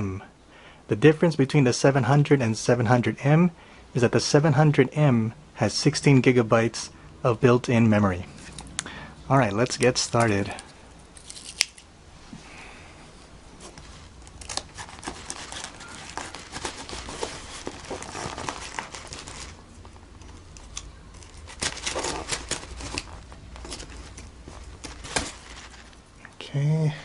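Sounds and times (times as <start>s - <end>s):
packing tape and cardboard tearing: 14.2s - 26.0s.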